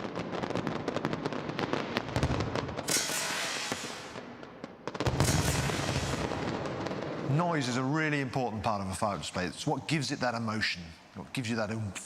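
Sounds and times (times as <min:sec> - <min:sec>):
firework bang: 0:00.0 - 0:04.4, 0:05.0 - 0:07.3
fireworks crackling: 0:00.0 - 0:11.7
firework rushing hiss: 0:02.8 - 0:04.2, 0:05.2 - 0:06.5.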